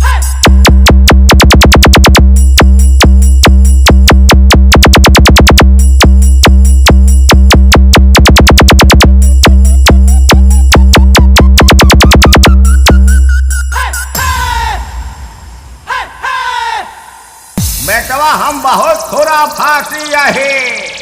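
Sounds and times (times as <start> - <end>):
deep sub-bass: 0.0 - 13.6
fast drum machine hits: 0.1 - 12.9, 17.6 - 21.0.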